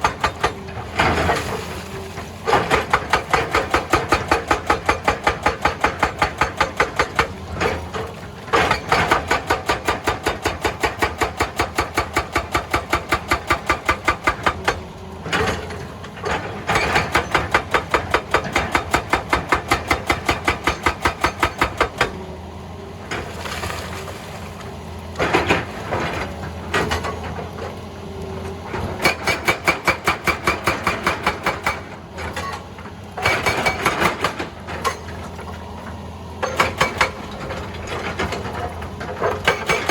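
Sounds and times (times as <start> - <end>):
hydraulic breaker hammering rock: 0.0 - 1.7, 2.4 - 22.2, 28.6 - 35.4, 36.4 - 39.9
engine running: 12.8 - 39.9.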